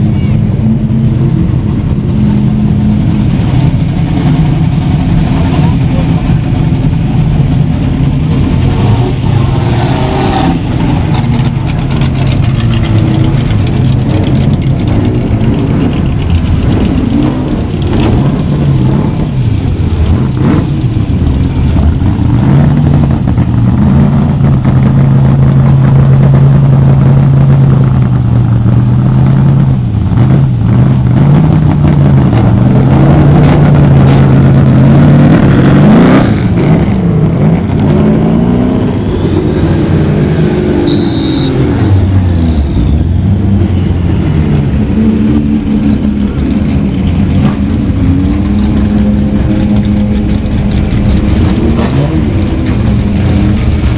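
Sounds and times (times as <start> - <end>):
racing car engines idling: 10.5 - 22.4, 42.6 - 53.9.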